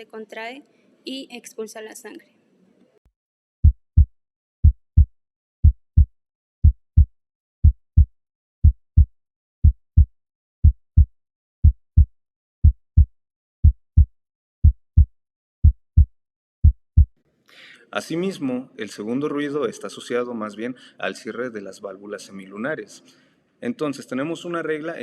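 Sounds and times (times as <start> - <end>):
heartbeat thumps: 3.6 - 17.1.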